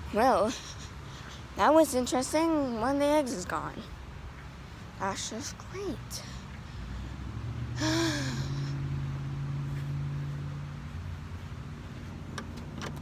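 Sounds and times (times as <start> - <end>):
steady low hum: 0.0 - 13.0
breathy voiced sigh: 7.8 - 8.8.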